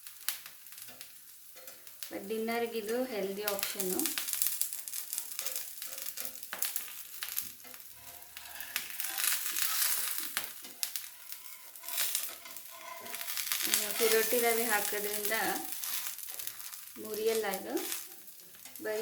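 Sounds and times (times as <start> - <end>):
roti sizzling in a hot pan: 0.0 - 19.0.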